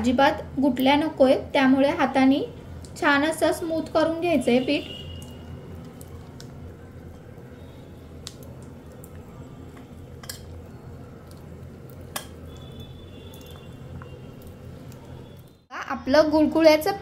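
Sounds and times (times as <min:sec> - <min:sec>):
batter squishing by hand: 0:03.8 - 0:15.7.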